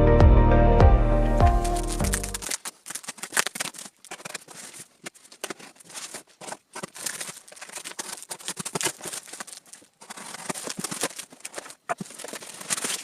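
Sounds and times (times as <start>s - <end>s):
background music: 0.0s - 2.4s.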